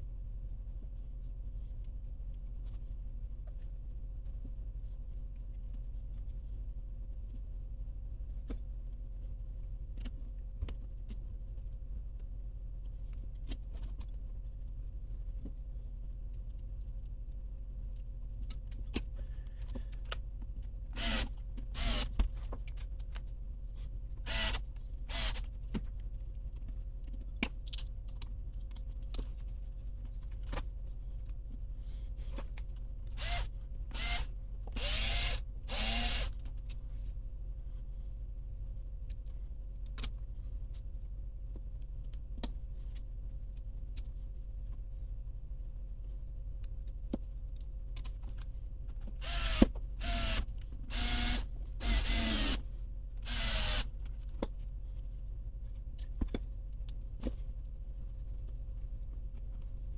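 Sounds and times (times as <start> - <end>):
light clicks of parts handled: 1.7 - 20.8, 21.4 - 33.8, 38.6 - 50.9, 54.0 - 59.9
small electric motor whirring: 21.0 - 22.2, 24.3 - 25.5, 33.2 - 36.4, 49.2 - 53.9.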